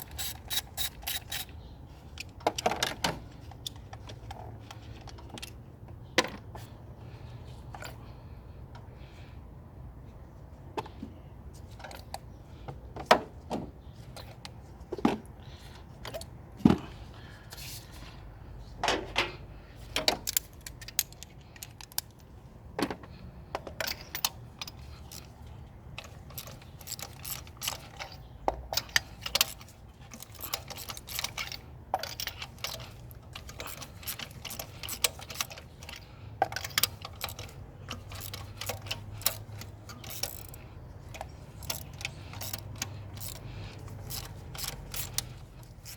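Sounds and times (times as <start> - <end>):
hand tools clicking and clinking: 0.0 - 1.6, 20.0 - 22.3, 23.6 - 45.9.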